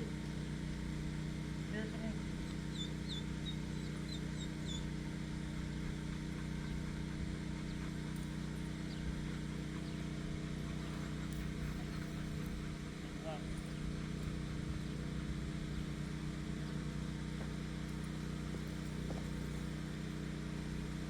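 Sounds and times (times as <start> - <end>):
low hum of running motor: 0.0 - 21.0
high bird chirps: 2.5 - 4.8.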